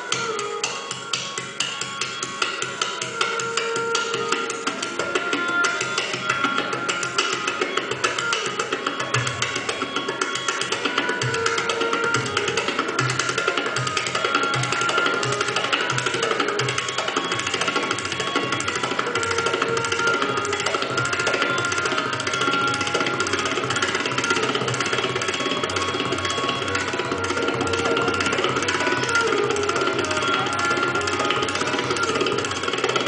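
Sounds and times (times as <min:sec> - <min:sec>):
tabla playing fast strokes: 0:00.0 - 0:33.0.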